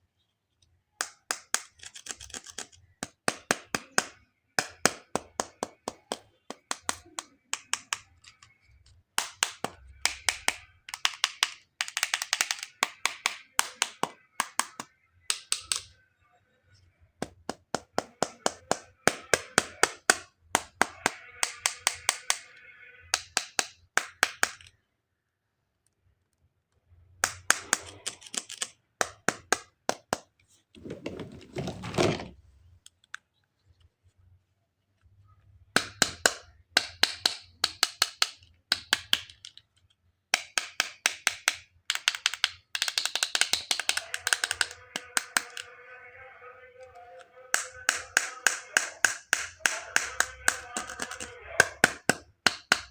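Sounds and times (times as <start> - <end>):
plastic clicks and taps: 0.6 - 16.0, 17.2 - 24.8, 35.7 - 45.7.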